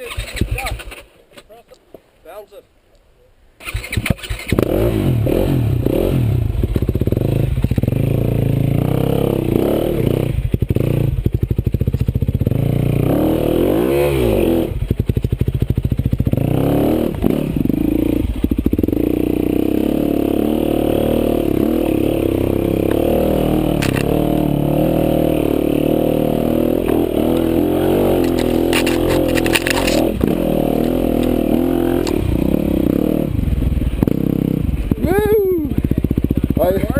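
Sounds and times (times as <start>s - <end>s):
motorcycle engine revving: 0.0s - 1.1s, 3.6s - 36.9s
clattering: 28.2s - 30.2s.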